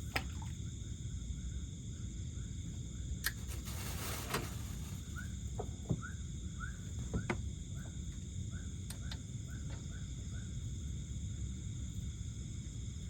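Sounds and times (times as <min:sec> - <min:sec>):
crickets trilling: 0:00.0 - 0:13.0
low background rumble: 0:00.0 - 0:13.0.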